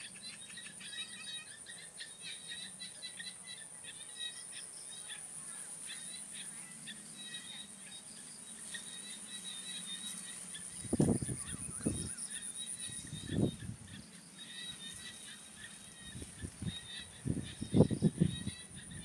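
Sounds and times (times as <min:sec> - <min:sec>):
insects trilling: 0:00.0 - 0:19.0
short chirping calls: 0:08.8 - 0:19.0.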